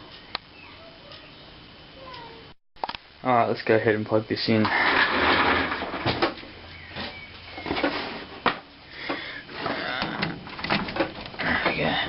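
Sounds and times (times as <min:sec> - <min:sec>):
rustling and scraping: 0:04.6 - 0:12.0
sharp clicks and knocks: 0:10.0 - 0:11.8.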